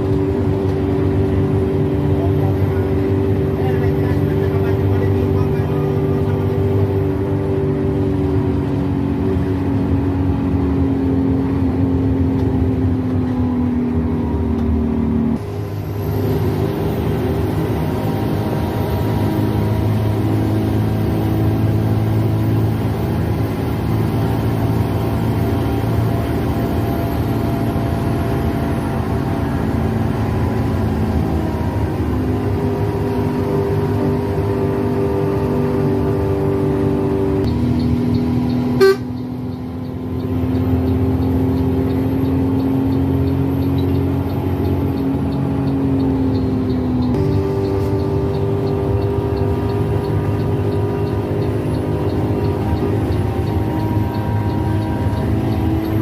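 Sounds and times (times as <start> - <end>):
bus engine drone: 0.0 - 56.0
road noise: 0.0 - 56.0.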